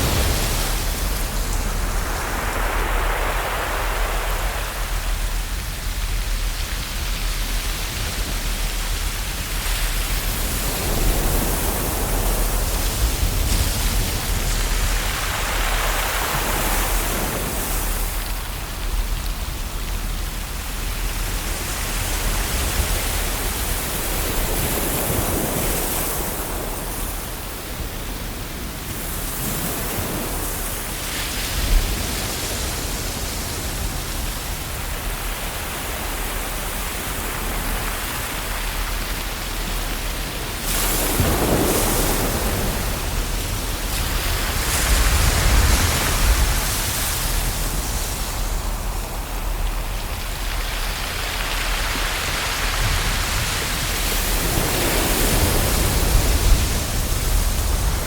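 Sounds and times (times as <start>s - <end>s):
ocean waves breaking: 0.0s - 58.0s.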